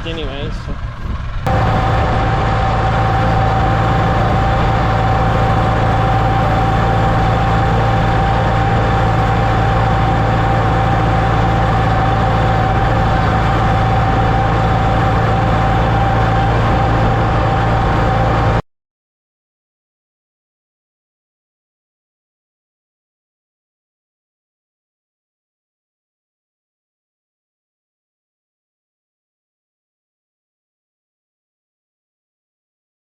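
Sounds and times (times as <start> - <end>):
tractor engine running: 0.0 - 18.6.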